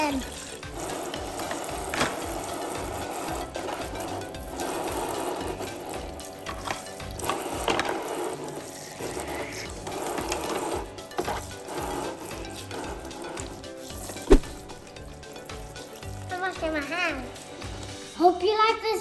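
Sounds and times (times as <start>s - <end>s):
small pump whirring: 0.0s - 16.4s
plastic dishes clicking: 6.4s - 8.5s.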